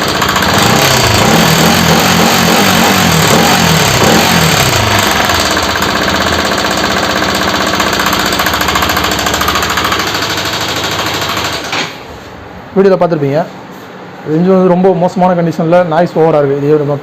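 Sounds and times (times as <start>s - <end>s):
motorcycle engine idling with clatter: 0.0s - 11.9s.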